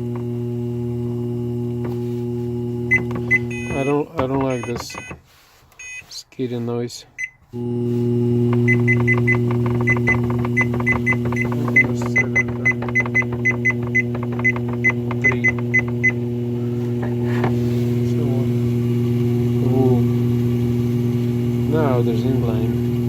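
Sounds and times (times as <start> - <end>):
treadmill motor humming: 0.0 - 5.2, 7.6 - 23.0
short high console beeps: 2.9 - 5.1, 5.8 - 6.0.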